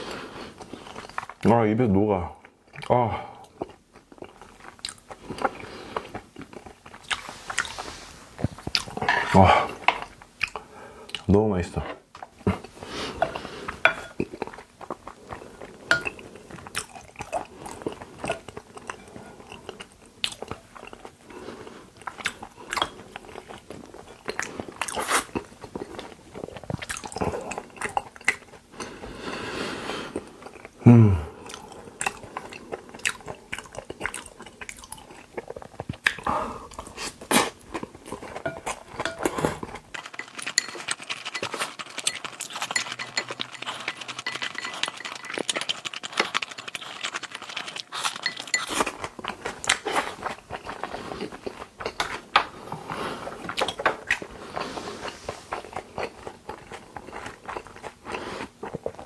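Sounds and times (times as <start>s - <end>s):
wet chewing: 2.5s - 11.3s, 12.1s - 29.4s, 31.4s - 59.0s
person humming: 30.8s - 31.3s.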